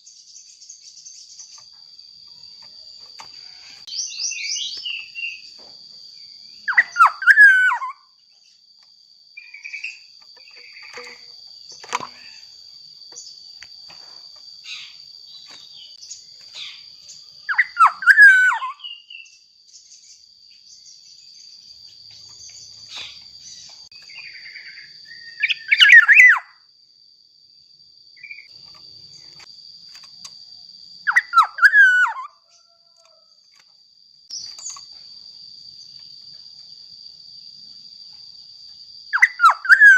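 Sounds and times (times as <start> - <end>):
faint chirps: 0.0 - 26.7, 27.6 - 39.9
high-pitched insect buzz: 0.0 - 39.9
bird singing fluty whistles: 6.6 - 8.0, 17.5 - 19.4, 23.0 - 26.6, 31.0 - 32.4, 39.1 - 39.9.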